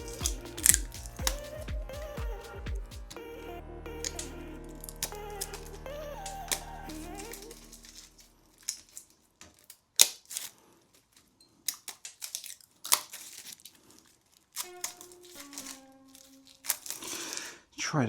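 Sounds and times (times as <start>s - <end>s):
tape snapping and ripping: 4.9s - 17.5s.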